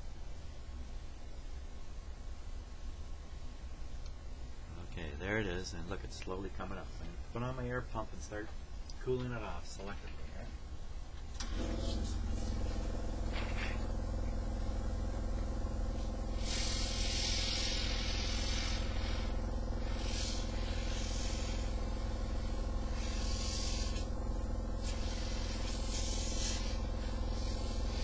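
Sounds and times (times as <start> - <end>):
electric air pump humming: 11.1 - 28.0
airy hiss: 15.9 - 24.1, 24.8 - 28.0.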